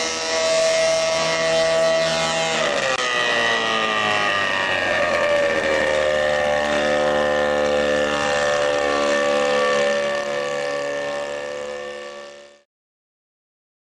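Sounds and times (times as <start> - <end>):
light aircraft engine drone: 0.0 - 12.7.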